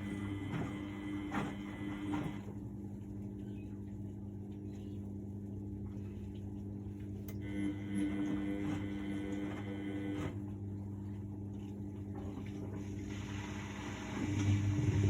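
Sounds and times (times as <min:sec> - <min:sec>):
washing machine motor hum: 0:00.0 - 0:15.0
bright noisy washing layer: 0:11.5 - 0:15.0.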